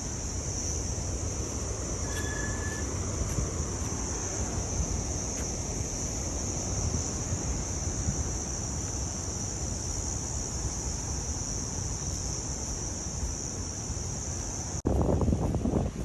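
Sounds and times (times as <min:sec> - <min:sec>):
insects chorus: 0:00.0 - 0:16.0
wind rumble on microphone: 0:00.0 - 0:16.0.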